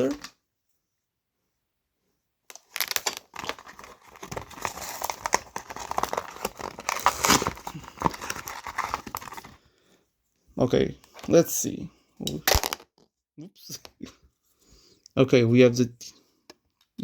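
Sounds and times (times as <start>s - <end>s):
toy parts clicking and rattling: 2.5s - 9.5s, 12.3s - 13.0s
plastic packaging crinkling: 2.5s - 9.6s.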